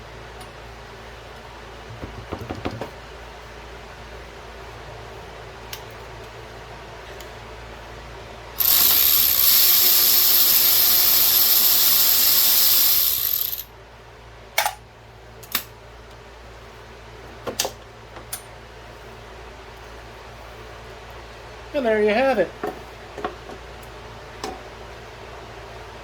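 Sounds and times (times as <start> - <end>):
power ratchet running: 8.6 - 13.7.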